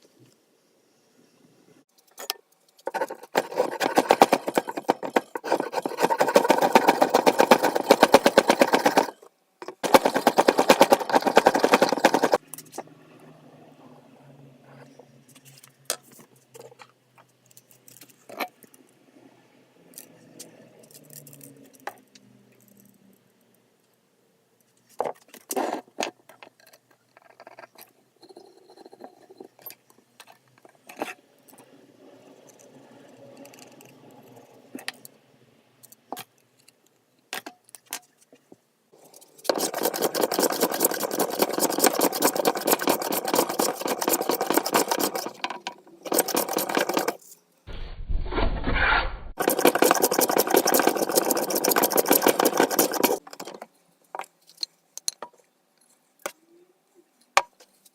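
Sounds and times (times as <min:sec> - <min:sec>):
tool scraping against axe: 0:02.9 - 0:09.2, 0:09.8 - 0:12.4, 0:39.0 - 0:47.2, 0:48.8 - 0:53.6.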